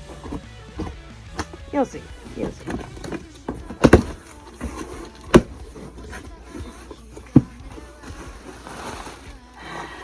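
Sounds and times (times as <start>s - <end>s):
faint cardboard rustling: 0.0s - 10.0s
sharp knocks on cardboard box: 2.6s - 5.8s.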